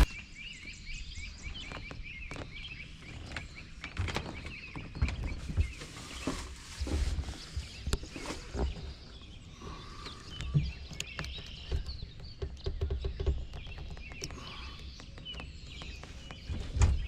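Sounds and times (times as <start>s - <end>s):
birds chirping and calling: 0.0s - 17.0s
wind rumble on microphone: 0.0s - 17.0s
small clicks and taps: 10.0s - 16.6s.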